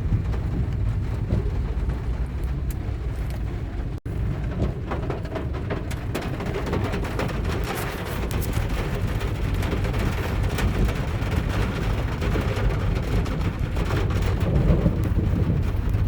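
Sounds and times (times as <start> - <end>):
low rumble: 0.0 - 16.0
rain on a car: 0.0 - 16.0
hailstones hitting car body: 4.1 - 16.0.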